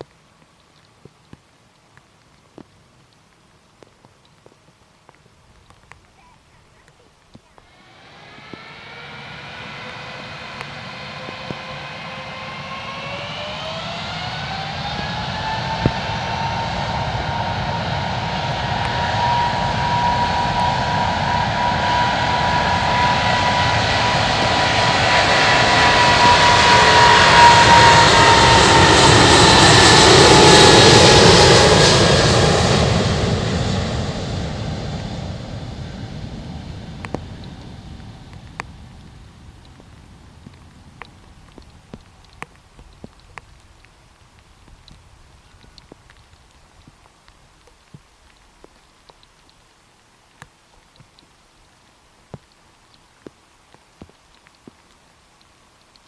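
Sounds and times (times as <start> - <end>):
jet engines whining: 7.5 - 46.4.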